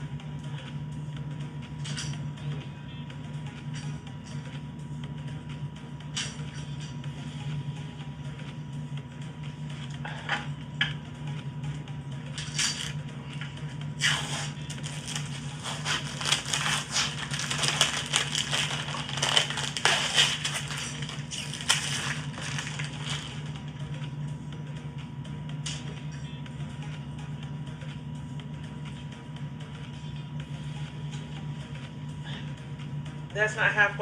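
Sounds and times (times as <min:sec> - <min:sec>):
steady low hum: 0:00.0 - 0:34.0
plastic bottle crinkling: 0:14.8 - 0:23.3.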